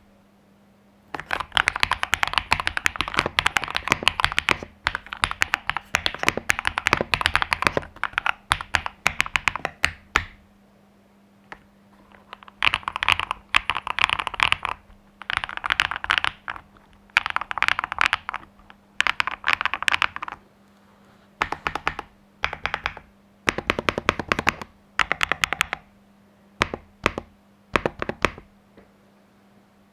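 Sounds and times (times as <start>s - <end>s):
mechanical keyboard typing: 1.1s - 10.4s, 11.5s - 20.4s, 21.4s - 25.9s, 26.6s - 28.5s.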